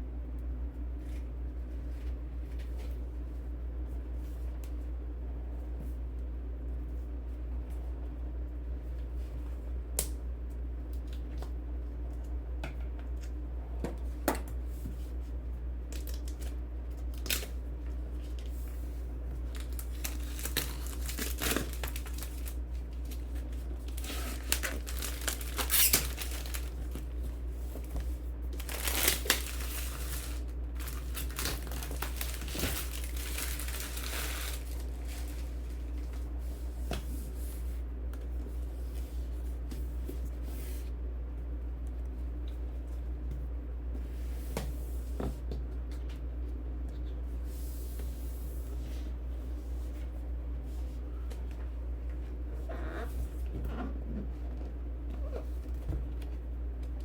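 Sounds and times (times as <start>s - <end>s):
steady low hum: 0.0s - 57.0s
wrapping crinkling and tearing: 15.9s - 17.6s, 19.4s - 27.2s, 27.9s - 36.3s.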